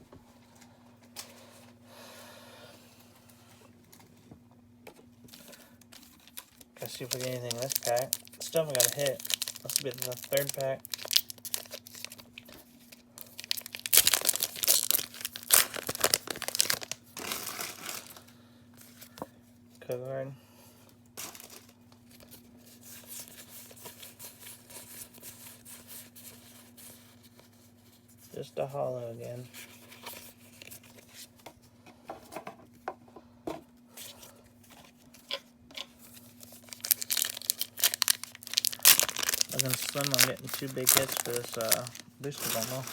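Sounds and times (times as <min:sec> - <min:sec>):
foil wrapper crinkling and tearing: 0:05.3 - 0:18.3, 0:36.0 - 0:42.9.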